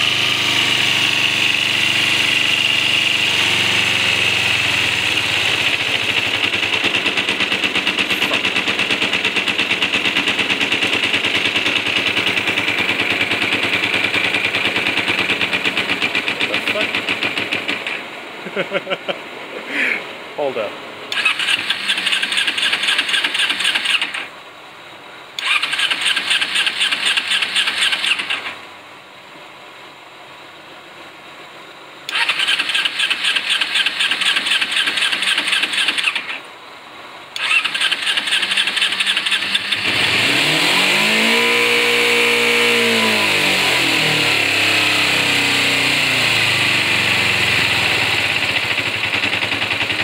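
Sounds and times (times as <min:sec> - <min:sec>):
motorcycle engine revving: 0:00.0 - 0:18.1, 0:21.1 - 0:24.3, 0:25.4 - 0:28.6, 0:32.1 - 0:36.5, 0:37.4 - 0:50.0
motorcycle starter cranking: 0:05.7 - 0:18.0, 0:21.1 - 0:24.3, 0:25.4 - 0:28.6, 0:32.1 - 0:36.5, 0:37.4 - 0:40.6, 0:48.2 - 0:50.0.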